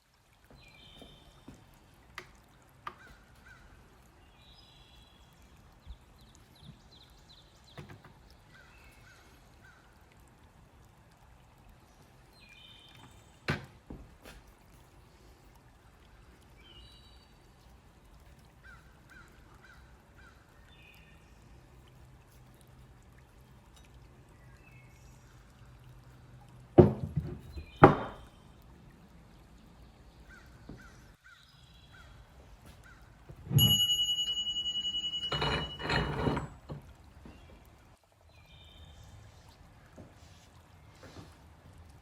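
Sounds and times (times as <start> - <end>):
ringing metallic strike: 33.6 - 36.3
hard objects knocking: 35.2 - 36.8
scraping clatter: 35.2 - 36.8.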